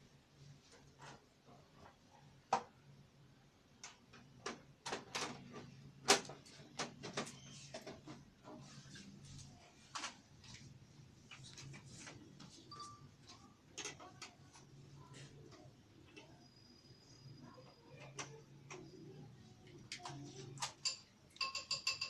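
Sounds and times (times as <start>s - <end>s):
computer hardware clicks and knocks: 13.3s - 14.7s, 17.6s - 22.0s.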